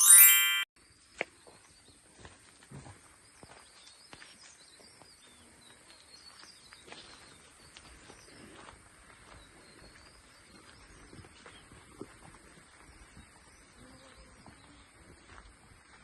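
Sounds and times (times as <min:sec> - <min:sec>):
soft footsteps on trail: 0:01.6 - 0:13.6, 0:14.4 - 0:16.0.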